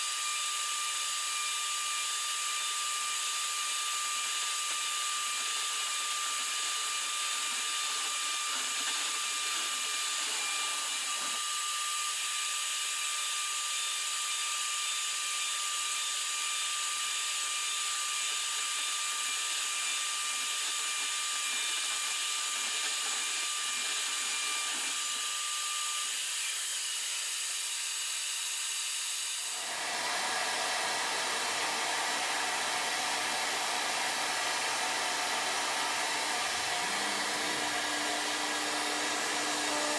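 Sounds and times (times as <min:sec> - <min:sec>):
router spindle whining: 0:05.9 - 0:12.2, 0:20.9 - 0:39.9.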